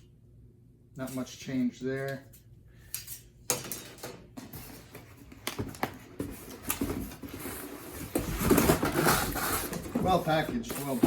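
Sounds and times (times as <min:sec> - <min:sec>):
packaging rustling and crinkling: 0:04.5 - 0:11.0.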